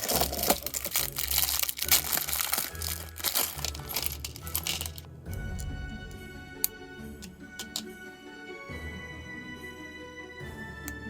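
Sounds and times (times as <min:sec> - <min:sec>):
plastic bag crinkling: 0:00.0 - 0:05.1
plastic bricks clattering: 0:00.0 - 0:05.1, 0:07.6 - 0:07.9
background music: 0:00.0 - 0:11.0.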